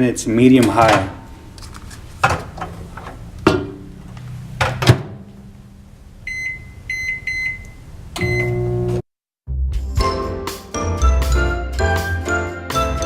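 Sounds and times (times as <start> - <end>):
knocks and clunk: 2.2 - 5.4
microwave keypad beeping: 6.3 - 8.8.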